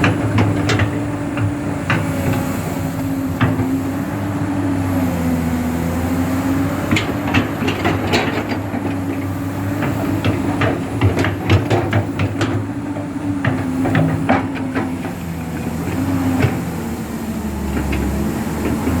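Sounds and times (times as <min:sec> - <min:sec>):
machine knocks and clanks: 0:00.0 - 0:02.5, 0:06.9 - 0:16.8
excavator diesel engine running: 0:00.0 - 0:19.0.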